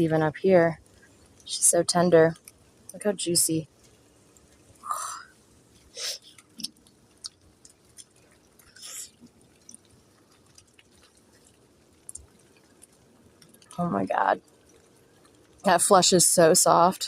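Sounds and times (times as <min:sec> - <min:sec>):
small clicks: 0:02.3 - 0:03.0, 0:05.7 - 0:13.8, 0:14.4 - 0:15.8.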